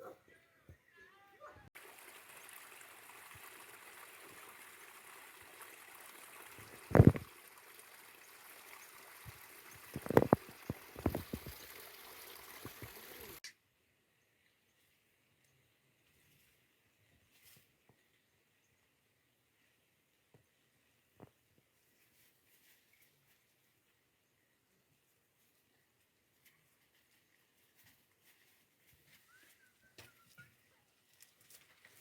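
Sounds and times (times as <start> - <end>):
running water: 1.8 - 13.4.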